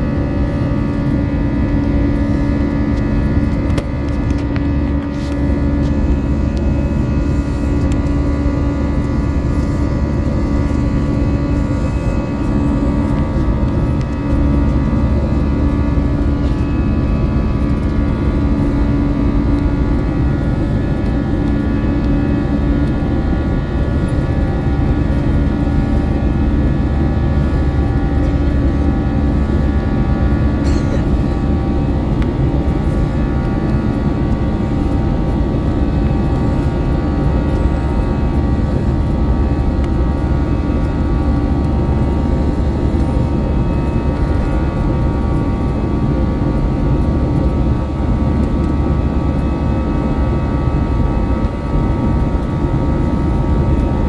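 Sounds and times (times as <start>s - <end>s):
jet engine rumble from cabin: 0.0s - 54.0s.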